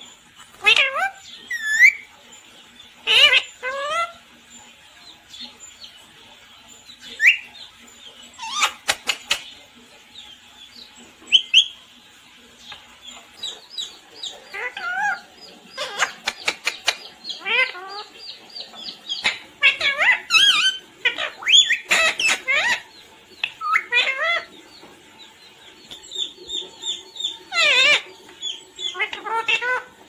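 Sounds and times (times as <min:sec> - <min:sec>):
parrot chirps: 0:00.5 - 0:02.1, 0:03.0 - 0:04.2, 0:08.4 - 0:09.5, 0:11.3 - 0:11.8, 0:13.4 - 0:24.5, 0:25.9 - 0:29.9.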